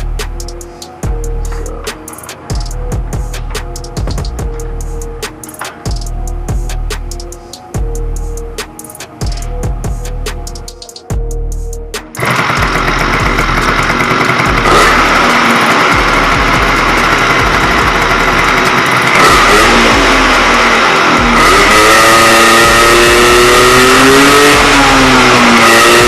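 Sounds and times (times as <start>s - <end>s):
moped two-stroke engine revving: 12.0s - 26.0s.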